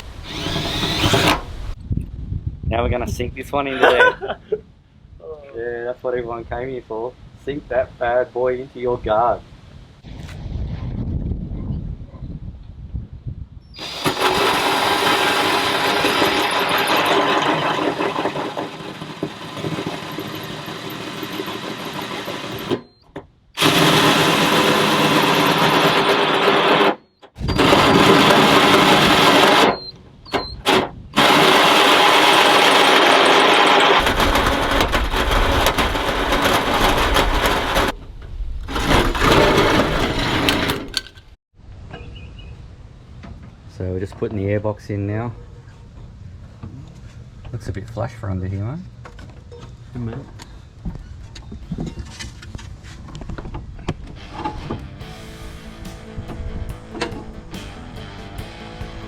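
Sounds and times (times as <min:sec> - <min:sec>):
power tool cutting sheet metal: 0:00.0 - 0:01.8, 0:13.8 - 0:23.0, 0:23.6 - 0:38.0, 0:38.7 - 0:41.1.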